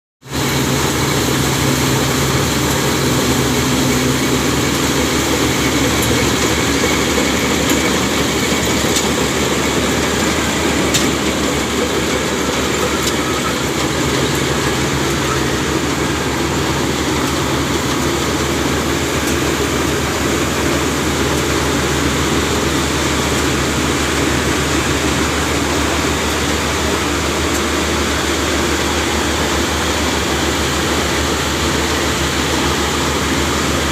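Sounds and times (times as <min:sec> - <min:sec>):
harvester engine running: 0:00.2 - 0:33.9.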